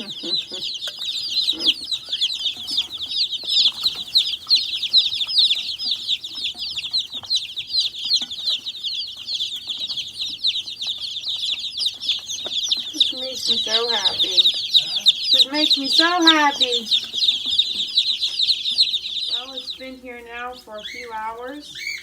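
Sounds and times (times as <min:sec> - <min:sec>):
chicks peeping: 0:00.0 - 0:22.0.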